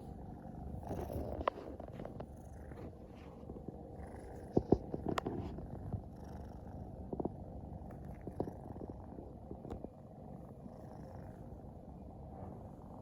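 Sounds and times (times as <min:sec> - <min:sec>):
kitten purring: 0:00.0 - 0:13.0.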